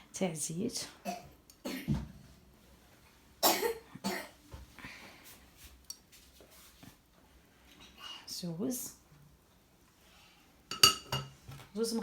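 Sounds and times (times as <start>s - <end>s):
person coughing: 3.4s - 4.4s.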